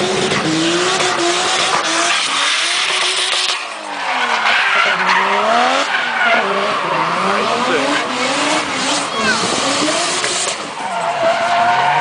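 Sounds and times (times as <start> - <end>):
car engine revving hard: 0.0 - 12.0
tyre squeal: 8.7 - 12.0.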